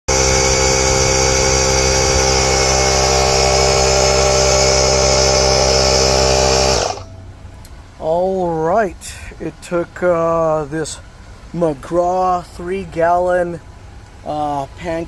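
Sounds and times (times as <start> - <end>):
air compressor running: 0.0 - 7.1.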